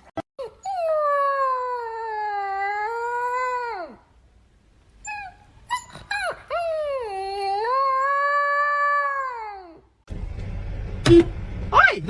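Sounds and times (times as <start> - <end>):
dog howling: 6.1 - 9.8.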